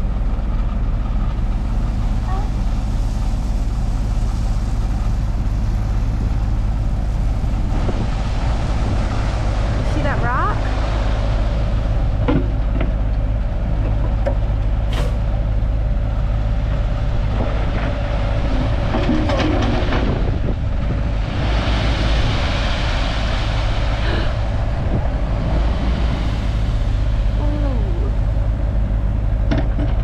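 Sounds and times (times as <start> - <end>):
bulldozer diesel engine rumbling: 0.0 - 30.0.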